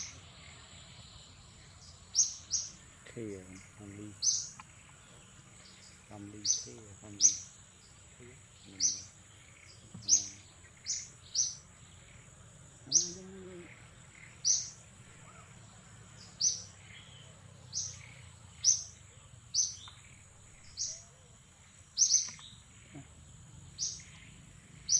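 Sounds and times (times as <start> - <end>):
animal chirping: 0.0 - 0.2, 8.7 - 11.7, 12.9 - 15.5, 19.6 - 21.3, 22.0 - 23.1, 23.7 - 24.9
high insect drone: 0.0 - 24.9
low animal call: 11.9 - 19.3, 20.2 - 24.9.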